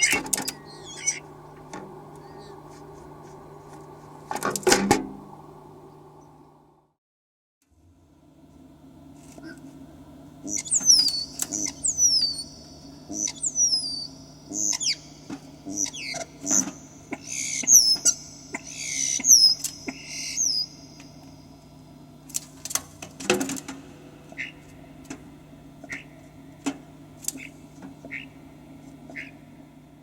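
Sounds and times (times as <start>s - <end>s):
starlings calling: 0.0s - 3.7s, 10.4s - 21.6s, 23.1s - 29.6s.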